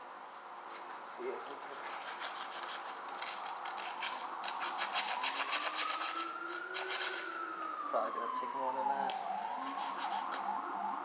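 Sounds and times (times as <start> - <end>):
sandpaper rasping on metal: 1.6 - 7.4, 9.3 - 10.4
siren rising and falling: 4.2 - 11.0.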